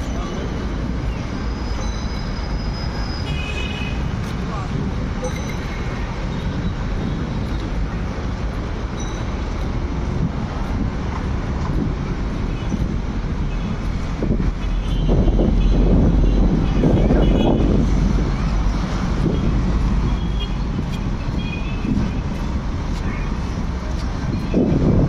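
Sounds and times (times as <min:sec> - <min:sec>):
road traffic noise: 0:00.0 - 0:25.0.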